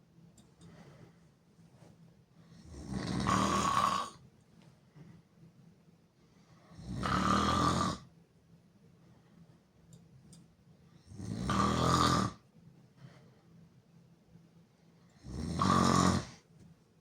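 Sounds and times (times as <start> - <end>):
person snoring loudly: 2.8 - 4.2, 6.9 - 8.1, 11.2 - 12.4, 15.2 - 16.4.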